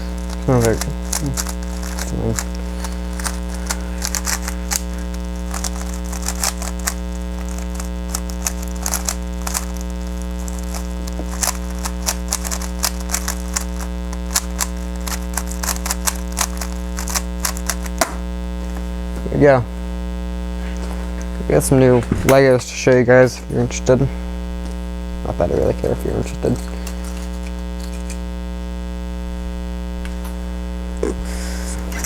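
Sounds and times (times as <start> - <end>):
puzzle cube clicking and clacking: 0.0 - 18.2
steady electrical hum: 0.0 - 32.0.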